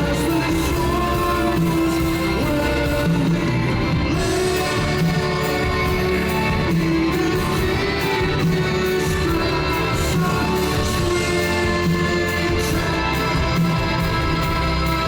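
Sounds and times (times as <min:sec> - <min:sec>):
live rock band playing: 0:00.0 - 0:15.0.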